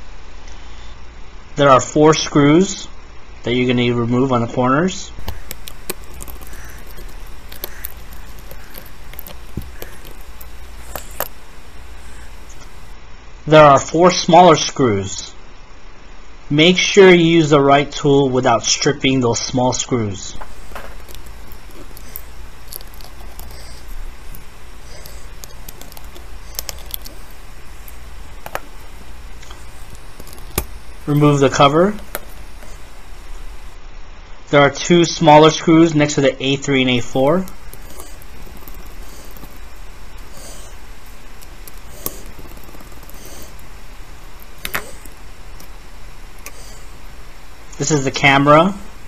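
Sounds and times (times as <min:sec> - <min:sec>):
steady low hum: 0:00.0 - 0:15.5, 0:17.4 - 0:34.3, 0:35.0 - 0:49.0
screwdriver clicking on screws: 0:05.2 - 0:12.9, 0:20.4 - 0:33.6.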